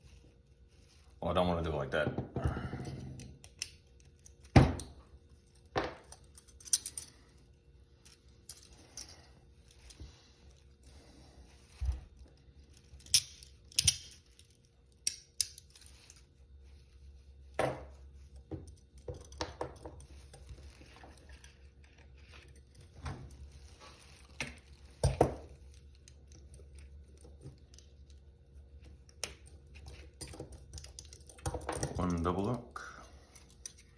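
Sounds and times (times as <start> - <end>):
metal handcuffs clicking and clinking: 3.2 - 7.2, 8.0 - 10.0, 12.3 - 16.2, 29.0 - 33.9.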